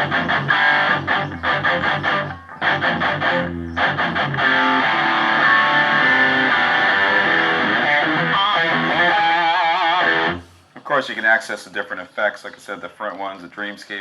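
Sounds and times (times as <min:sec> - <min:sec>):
distorted electric guitar: 0:00.0 - 0:10.6.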